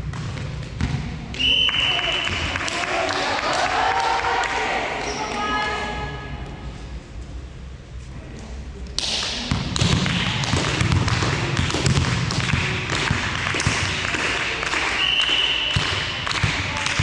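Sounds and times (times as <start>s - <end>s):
volleyball thuds and taps: 9.0s - 14.8s, 15.7s - 17.0s.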